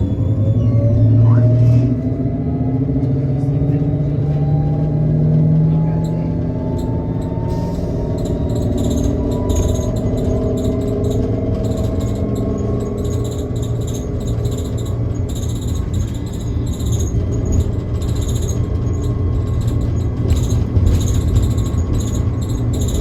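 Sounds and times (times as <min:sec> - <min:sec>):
low road rumble: 0:00.0 - 0:23.0.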